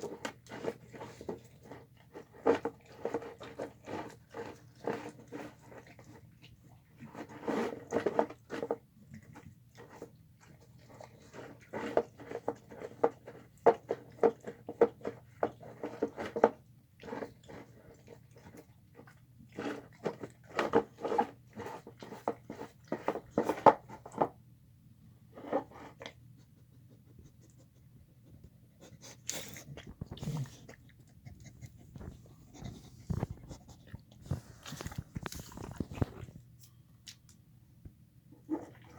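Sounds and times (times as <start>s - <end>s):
dog chewing and smacking: 28.3s - 37.3s.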